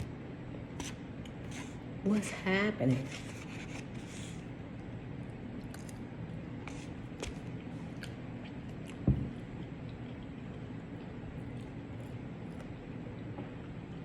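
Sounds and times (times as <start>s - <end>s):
chewing and mouth clicks: 7.2s - 14.0s.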